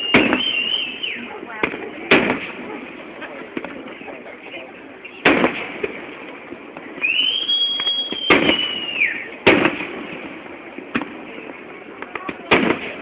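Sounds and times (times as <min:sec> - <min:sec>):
whistling firework shriek: 0:00.0 - 0:01.3, 0:07.0 - 0:09.4
small firework pops: 0:00.0 - 0:02.8, 0:03.5 - 0:04.1, 0:05.2 - 0:13.0
firework shells bursting: 0:00.0 - 0:04.1, 0:04.8 - 0:13.0.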